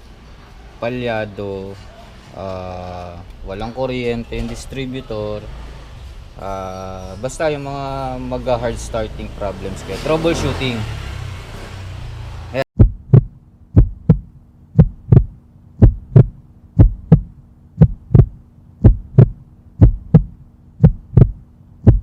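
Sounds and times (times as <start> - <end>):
faint steady hum: 12.8 - 22.0
heartbeat thumps: 12.8 - 22.0.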